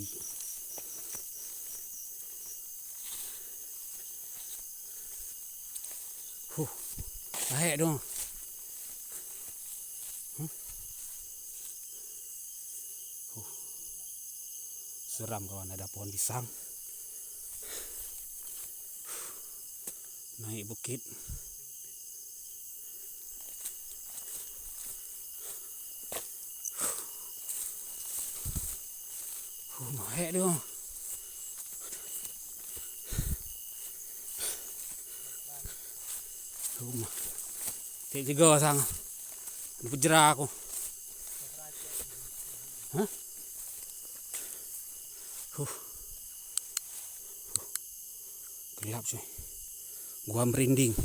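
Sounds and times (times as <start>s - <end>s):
footsteps: 0.0s - 11.8s, 23.3s - 47.2s
insects chirping: 0.0s - 51.0s.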